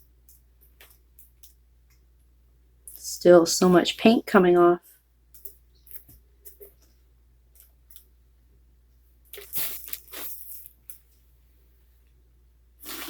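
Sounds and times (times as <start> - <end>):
faint handling clicks and taps: 0.2 - 3.0, 5.3 - 8.1
short squishy swishing: 9.4 - 10.7.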